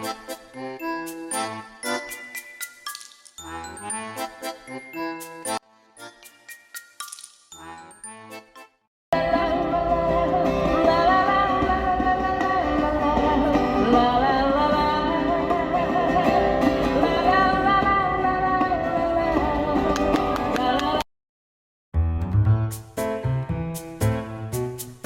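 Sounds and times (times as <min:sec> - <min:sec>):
guitar: 0:09.2 - 0:21.0
person singing: 0:09.2 - 0:21.0.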